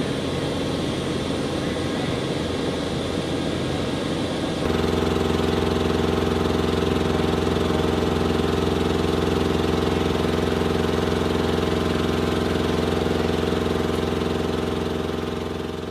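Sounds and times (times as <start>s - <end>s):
engine idling: 4.6s - 15.9s.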